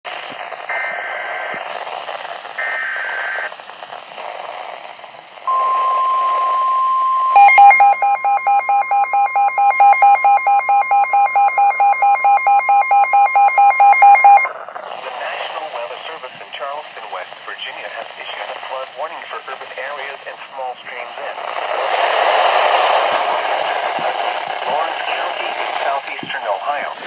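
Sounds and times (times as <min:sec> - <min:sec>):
radio hiss: 0:00.1 - 0:06.7, 0:07.3 - 0:27.0
rapid pulsing alarm beep: 0:05.5 - 0:14.5
steady warning tone: 0:05.5 - 0:14.5.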